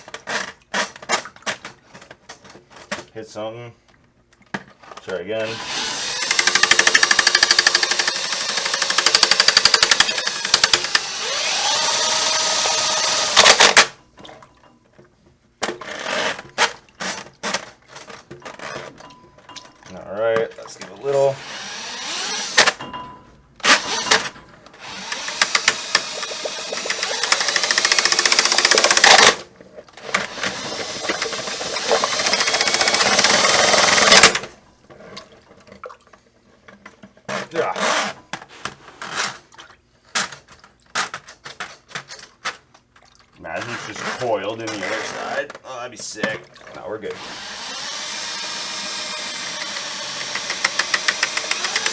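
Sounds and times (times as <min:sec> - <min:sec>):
drill whine: 0:05.4 - 0:13.9, 0:21.3 - 0:22.8, 0:23.6 - 0:29.4, 0:30.1 - 0:34.5, 0:47.1 - 0:51.9
drain auger chattering: 0:05.4 - 0:14.0, 0:20.4 - 0:22.9, 0:23.6 - 0:34.6, 0:43.5 - 0:51.9.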